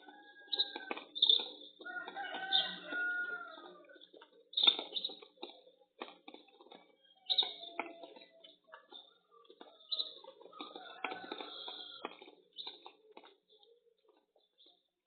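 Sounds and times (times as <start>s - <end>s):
rooster crowing: 1.9s - 3.8s.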